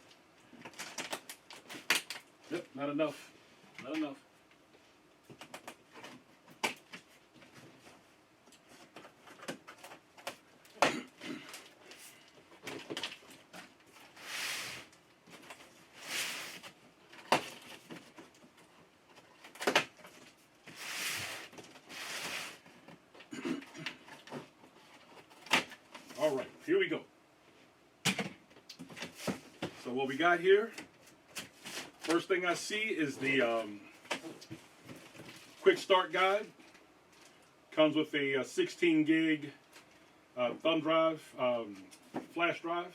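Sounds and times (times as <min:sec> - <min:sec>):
cardboard scraping and sliding: 0:15.8 - 0:16.7, 0:20.7 - 0:22.6.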